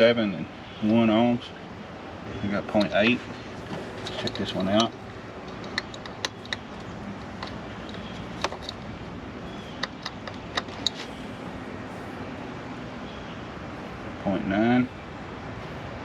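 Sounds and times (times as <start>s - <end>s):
low background hum: 0.0s - 16.0s
sharp clicks and light taps: 4.0s - 8.9s, 9.8s - 11.1s.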